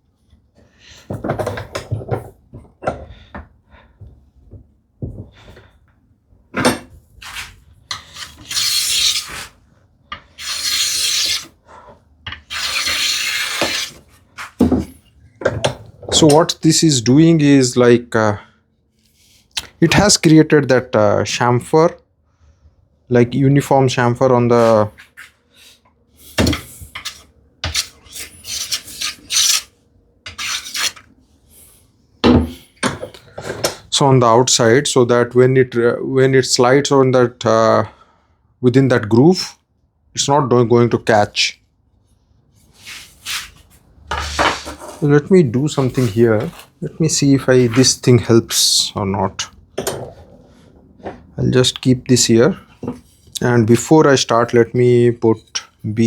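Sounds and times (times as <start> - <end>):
hand plane shaving wood: 7.2 - 9.6, 10.3 - 11.6, 12.4 - 14.1, 30.3 - 31.0
wood knock: 32.2 - 33.0.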